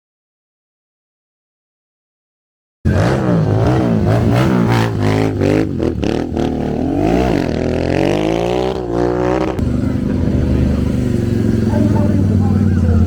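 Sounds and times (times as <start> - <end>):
motorcycle engine revving: 2.9 - 13.0.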